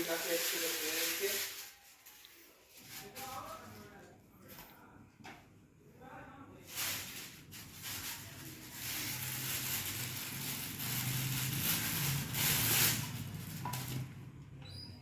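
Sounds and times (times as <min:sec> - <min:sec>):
packaging crinkling: 0:06.8 - 0:14.1.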